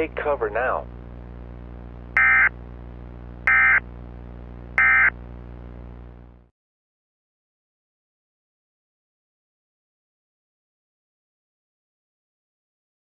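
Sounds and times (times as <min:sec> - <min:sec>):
steady low hum: 0:00.0 - 0:06.5
digital data bursts: 0:02.2 - 0:02.5, 0:03.5 - 0:03.8, 0:04.8 - 0:05.1.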